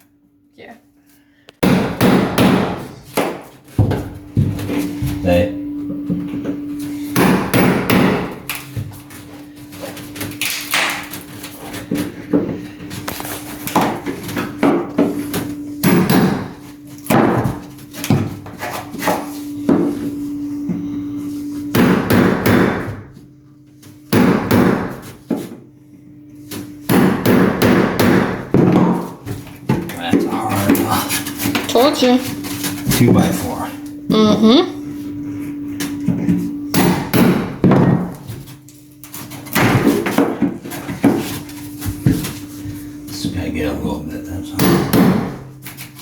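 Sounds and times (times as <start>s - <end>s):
hammer striking chisel into wood: 1.6s - 3.5s, 7.2s - 8.4s, 15.8s - 16.5s, 26.9s - 29.0s, 36.7s - 38.1s, 44.6s - 45.4s.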